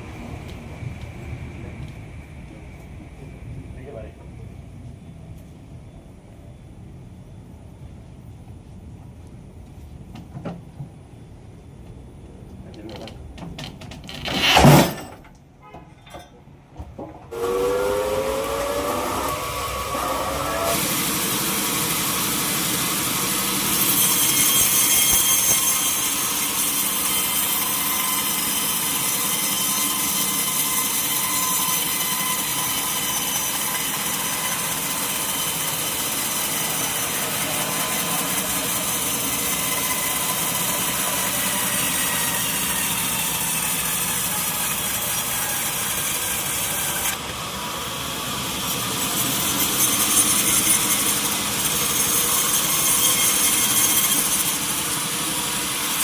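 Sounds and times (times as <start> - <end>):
sawmill saw cutting log: 17.3 - 56.0.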